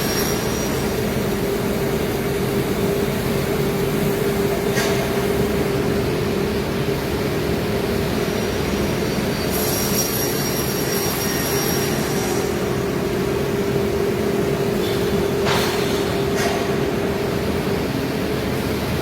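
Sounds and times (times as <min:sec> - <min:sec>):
cnc router cutting plywood: 0:09.0 - 0:13.6.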